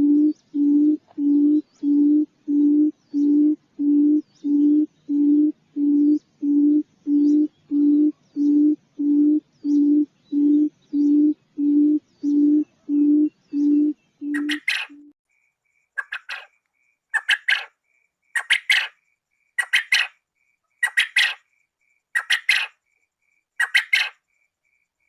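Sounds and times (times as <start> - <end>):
quail hooting: 0.0 - 15.1, 16.0 - 16.5, 17.1 - 17.7, 18.4 - 19.0, 19.6 - 20.2, 20.8 - 21.4, 22.2 - 22.8, 23.6 - 24.2.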